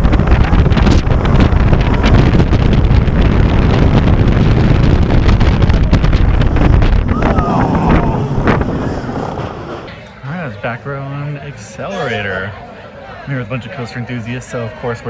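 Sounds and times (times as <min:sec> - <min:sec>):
heavy low rumble: 0:00.0 - 0:09.9
wind rushing over microphone: 0:00.0 - 0:09.9.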